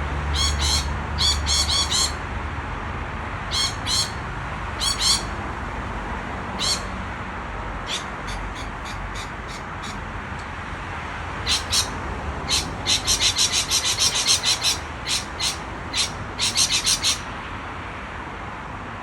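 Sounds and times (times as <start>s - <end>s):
lorikeets calling: 0.2s - 2.2s, 3.5s - 5.4s, 6.5s - 7.0s, 7.8s - 10.1s, 11.4s - 17.4s.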